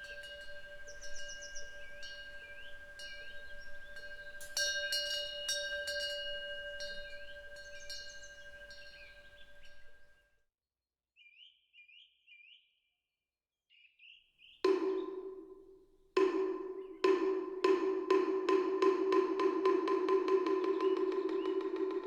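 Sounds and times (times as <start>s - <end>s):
small bird chirping: 0.0s - 4.6s.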